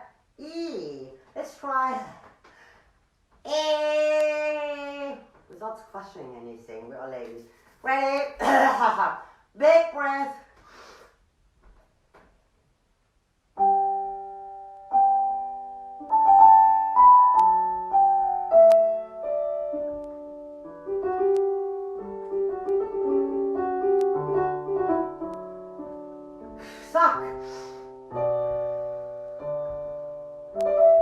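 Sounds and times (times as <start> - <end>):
piano chords: 13.6 - 31.0.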